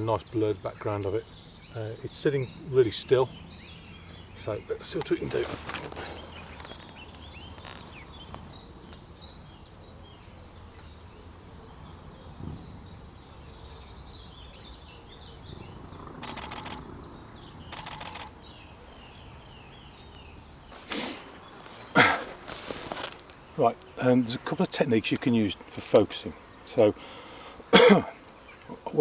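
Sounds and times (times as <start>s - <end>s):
small birds singing: 0.0s - 29.0s
camera shutter rapid clicks: 16.2s - 16.9s, 17.7s - 18.3s.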